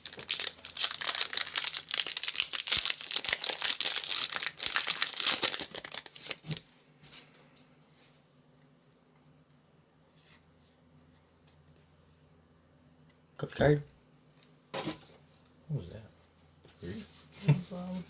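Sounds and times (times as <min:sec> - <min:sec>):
foil wrapper crinkling: 0:00.0 - 0:06.7.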